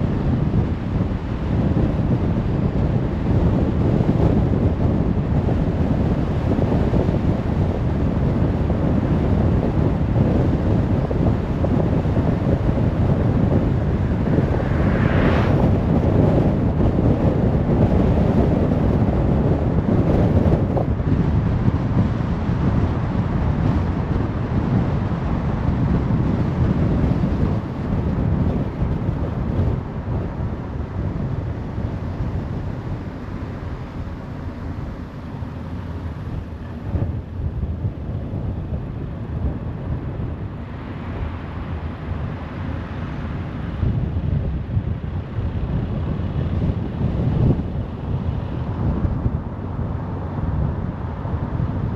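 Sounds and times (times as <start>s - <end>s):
tyre and wind noise: 0.0s - 51.9s
whoosh rising in pitch: 13.9s - 16.2s.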